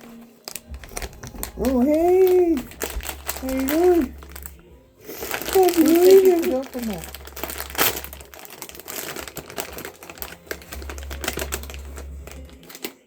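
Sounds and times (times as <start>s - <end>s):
clicking and rustling: 5.2s - 13.0s.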